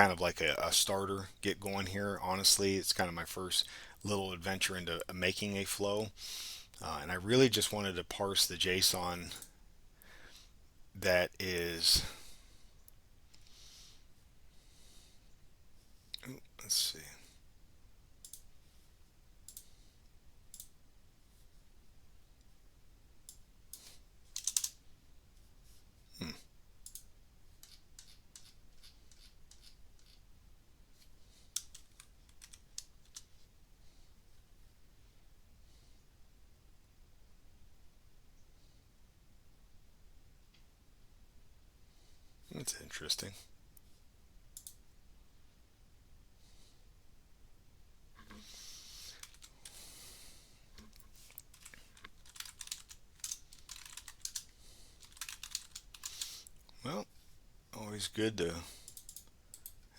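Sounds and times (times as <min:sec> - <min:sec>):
keyboard and mouse clicks: 0:24.4 - 0:24.8, 0:26.9 - 0:30.2, 0:31.6 - 0:33.4, 0:50.8 - 0:56.7.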